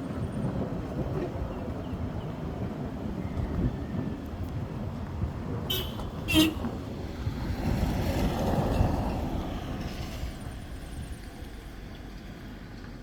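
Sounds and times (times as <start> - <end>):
vehicle road rumble: 0.0 - 13.0
horn toots: 5.7 - 6.8.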